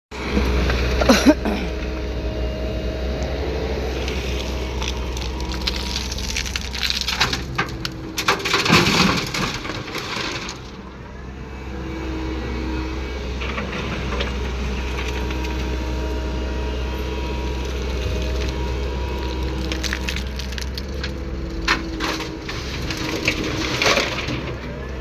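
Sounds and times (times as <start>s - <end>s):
excavator diesel engine running: 0.1s - 25.0s
stone clattering and cracking: 4.8s - 10.8s.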